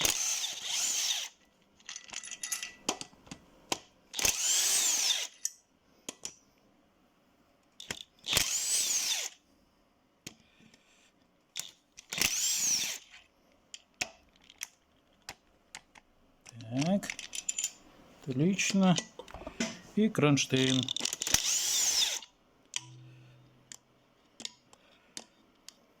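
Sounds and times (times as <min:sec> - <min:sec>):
drill-driver motor whine: 0:00.0 - 0:01.4, 0:04.2 - 0:05.3, 0:08.3 - 0:09.4, 0:12.1 - 0:13.1, 0:21.2 - 0:22.3.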